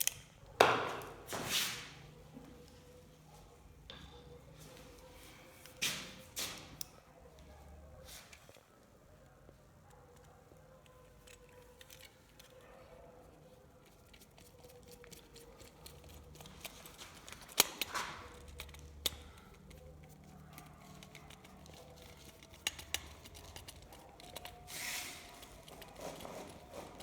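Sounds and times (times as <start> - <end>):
sharp clicks and snips: 0.0 - 0.4, 13.9 - 27.0
rustling scrapes: 24.6 - 27.0.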